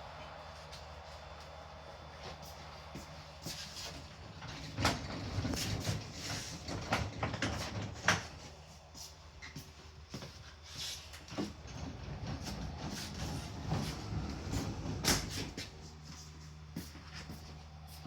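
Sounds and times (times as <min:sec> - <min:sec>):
table on casters rolling: 0:03.8 - 0:08.4, 0:11.3 - 0:15.7.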